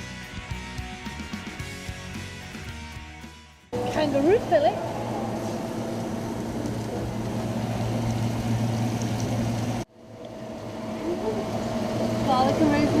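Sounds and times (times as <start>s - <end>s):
motor humming: 3.8s - 13.0s.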